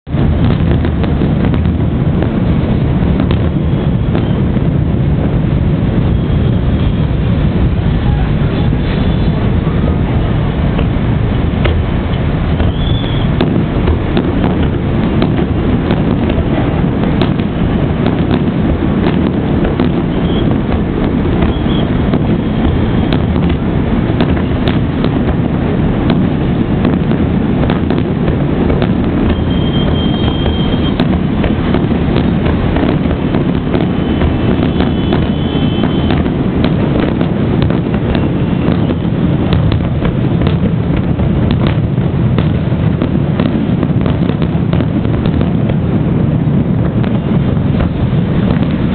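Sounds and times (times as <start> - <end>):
firework bangs and crackles: 0.0 - 48.9
loud rumble: 0.0 - 48.9
firework whistles: 2.3 - 4.7, 5.6 - 16.3, 17.0 - 25.4, 27.6 - 40.6.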